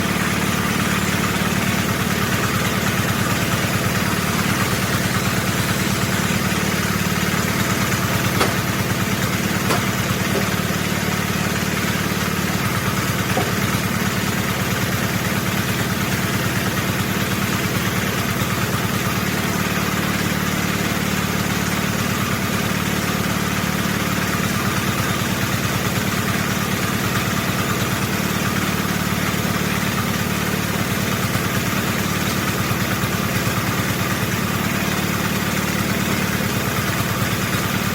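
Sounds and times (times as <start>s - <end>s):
engine running steadily: 0.0s - 37.9s.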